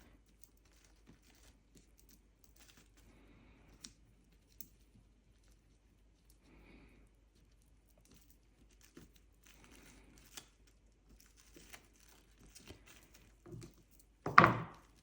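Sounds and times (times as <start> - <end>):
soft rustling of cling film: 0.0 - 15.0
soft knock: 14.3 - 14.8.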